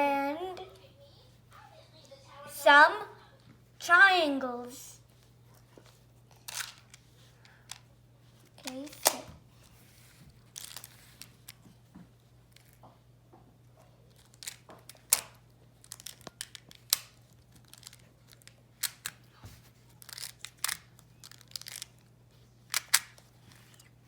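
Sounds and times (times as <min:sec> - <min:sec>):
plastic tiles clicking together: 0:17.7 - 0:19.2, 0:20.0 - 0:22.0, 0:22.7 - 0:23.2.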